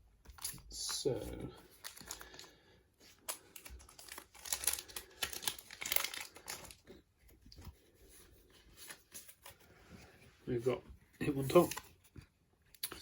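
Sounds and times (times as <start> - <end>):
foil wrapper crinkling: 1.7 - 7.0.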